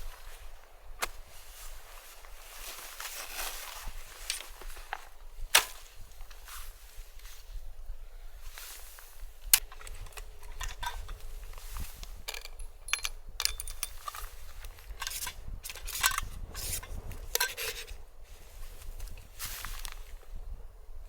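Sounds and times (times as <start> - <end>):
wind rumbling on microphone: 9.1 - 21.0
irregular clicks: 12.2 - 14.3.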